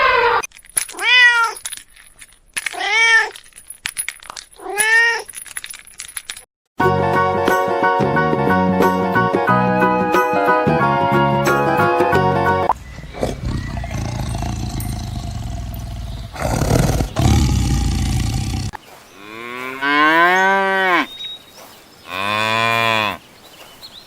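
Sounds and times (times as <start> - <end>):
cattle mooing: 13.1 - 21.1, 22.1 - 23.2.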